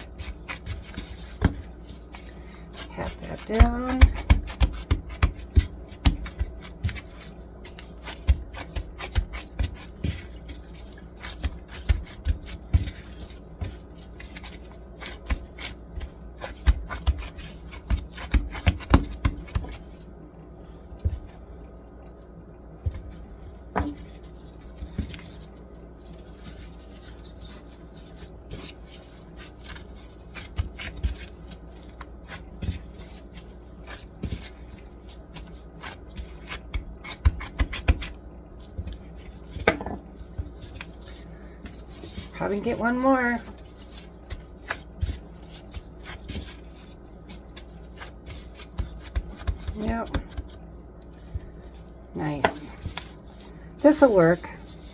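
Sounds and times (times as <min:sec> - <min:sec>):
hands patting dough on counter: 0:00.0 - 0:20.1, 0:20.8 - 0:21.7, 0:22.8 - 0:54.9.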